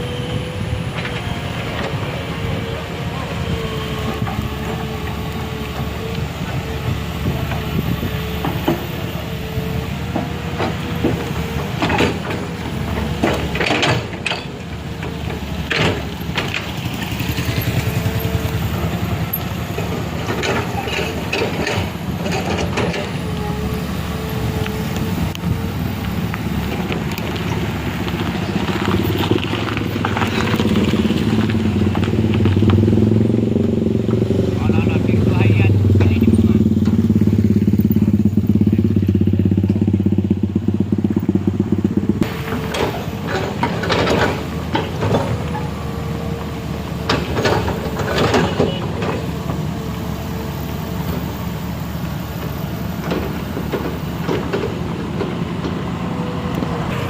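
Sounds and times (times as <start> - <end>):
heavy vehicle engine rumbling: 0.0 - 57.0
knocks and clatter: 10.1 - 18.2, 19.3 - 23.3, 26.0 - 45.9, 47.0 - 49.6, 52.4 - 56.0.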